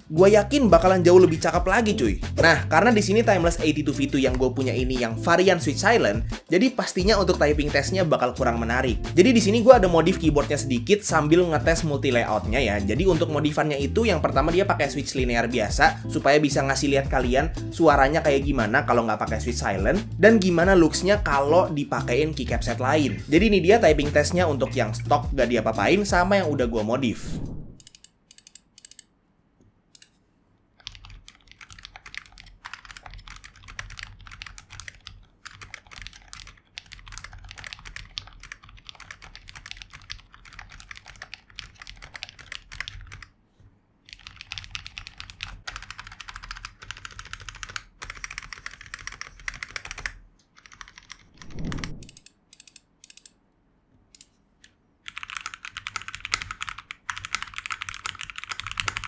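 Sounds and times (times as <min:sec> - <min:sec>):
louder brighter keyboard typing: 0:30.8 - 0:43.3, 0:44.1 - 0:53.3, 0:55.0 - 0:59.0
soft muted keyboard typing: 0:30.8 - 0:43.4, 0:44.0 - 0:53.3, 0:54.2 - 0:59.0.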